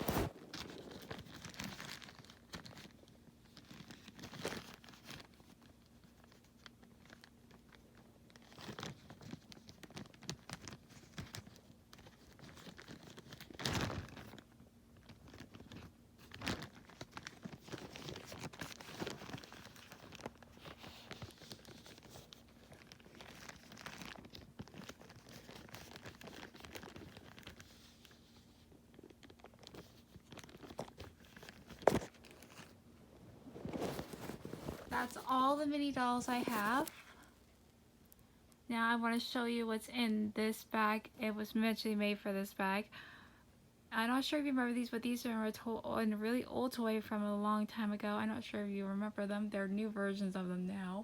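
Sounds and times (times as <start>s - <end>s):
plastic bags crinkling: 0.0s - 37.4s
faint steady hum: 0.0s - 51.0s.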